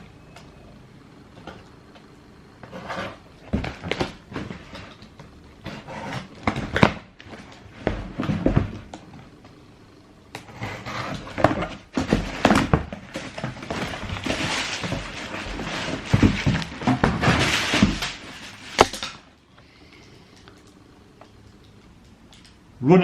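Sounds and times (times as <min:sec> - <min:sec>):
cardboard box rustling: 0:10.8 - 0:18.8.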